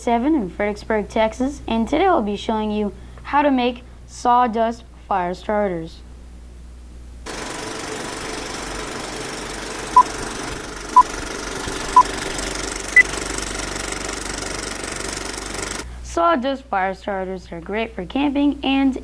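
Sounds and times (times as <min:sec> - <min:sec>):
steady mechanical rattle: 0:07.3 - 0:15.9.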